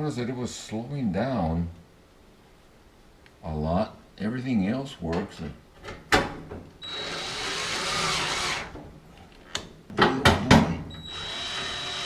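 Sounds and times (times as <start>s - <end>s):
cordless drill driving screws: 6.8s - 8.7s, 11.0s - 12.0s.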